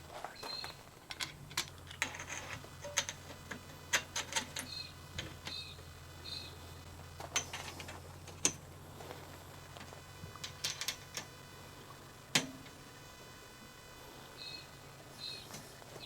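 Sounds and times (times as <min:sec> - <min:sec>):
faint low hum: 0:00.0 - 0:16.0
metal clicks and knocks: 0:01.1 - 0:05.6, 0:07.3 - 0:08.6, 0:10.4 - 0:11.3.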